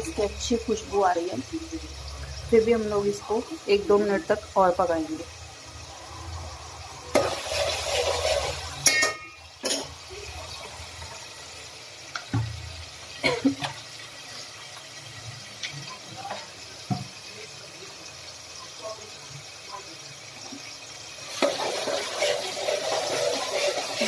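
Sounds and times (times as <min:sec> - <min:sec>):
food sizzling in oil: 0:00.0 - 0:24.0
spatula scraping a pan: 0:07.1 - 0:09.9, 0:21.3 - 0:24.0.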